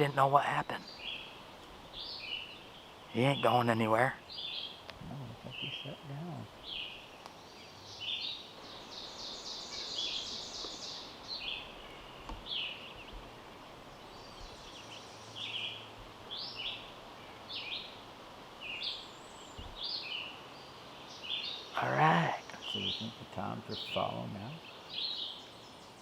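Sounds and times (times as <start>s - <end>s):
songbirds chirping: 0.0s - 26.0s.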